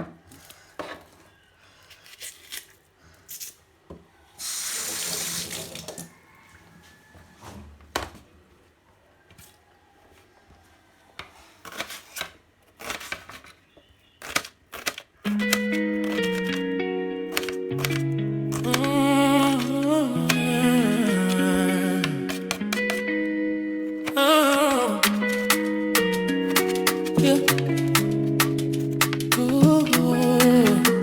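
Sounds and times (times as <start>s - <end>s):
water tap running: 4.4s - 6.1s
music: 15.3s - 31.0s.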